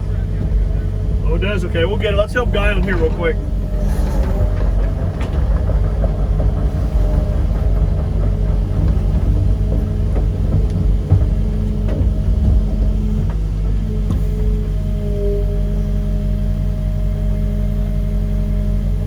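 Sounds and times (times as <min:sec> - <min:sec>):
faint knocks: 0:00.0 - 0:14.4
excavator diesel engine: 0:00.0 - 0:19.0.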